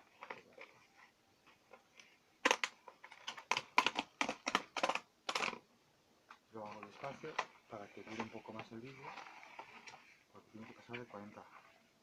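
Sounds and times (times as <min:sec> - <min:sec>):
packaging crackling and ripping: 0:02.4 - 0:05.6.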